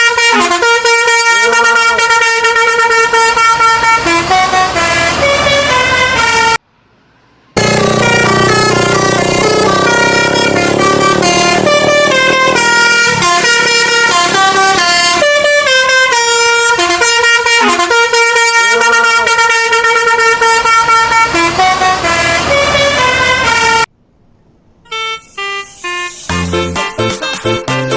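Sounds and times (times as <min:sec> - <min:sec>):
multi-tone bus horn melody: 0:00.0 - 0:06.6, 0:07.6 - 0:23.9, 0:24.9 - 0:27.9.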